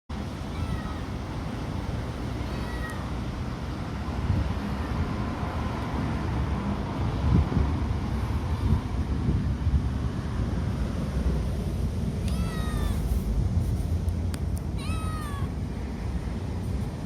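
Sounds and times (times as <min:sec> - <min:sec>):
wind rumble on microphone: 0:00.1 - 0:17.0
cat meowing faintly: 0:00.5 - 0:01.2, 0:02.3 - 0:03.1, 0:12.2 - 0:13.1, 0:14.8 - 0:15.6.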